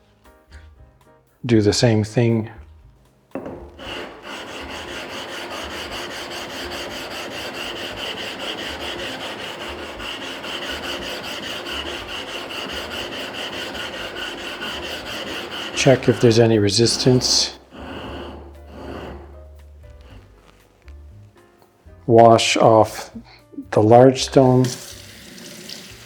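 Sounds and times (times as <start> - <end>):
gritty scraping on sharpening stone: 3.8 - 19.5.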